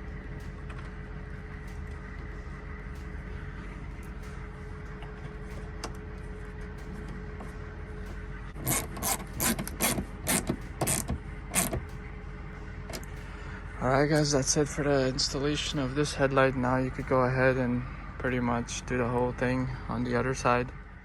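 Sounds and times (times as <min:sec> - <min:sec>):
steady low hum: 0:00.0 - 0:21.0
ratchet tool clicking: 0:08.6 - 0:11.8.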